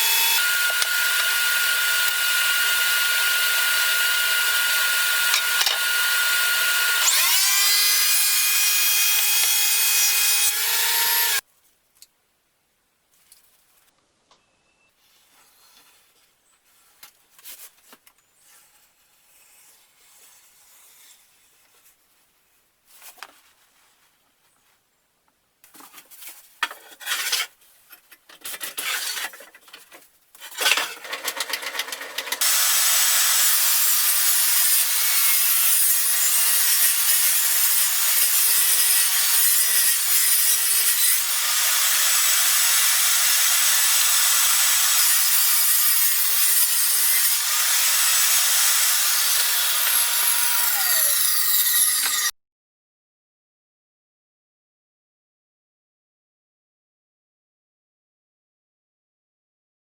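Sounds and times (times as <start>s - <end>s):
tool scraping wood: 25.8s - 27.6s, 28.4s - 29.6s.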